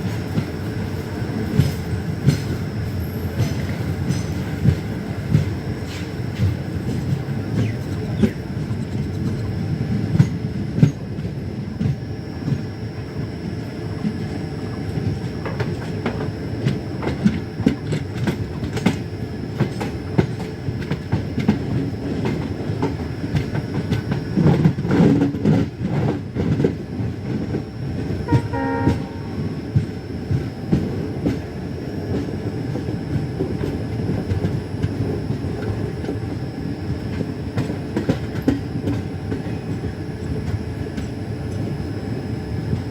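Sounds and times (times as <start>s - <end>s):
train rumbling at speed: 0.0s - 42.9s
brief pitched tone: 28.3s - 29.5s.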